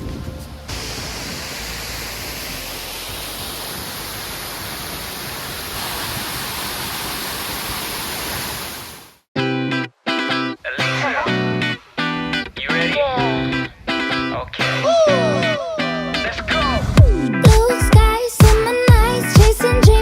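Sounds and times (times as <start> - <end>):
sea rushing along rocky coast: 0.7 - 9.2.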